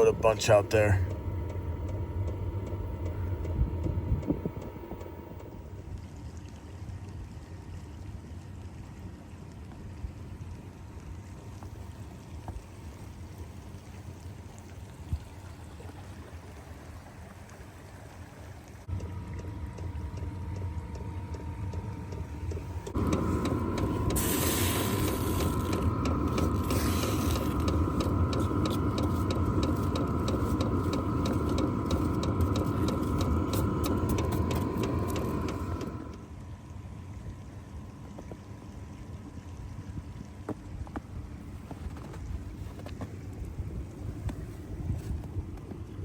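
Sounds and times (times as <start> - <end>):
rapid clicking: 0.0 - 5.8, 18.9 - 36.2
heater blower hum and whine: 0.0 - 6.2, 10.7 - 46.0.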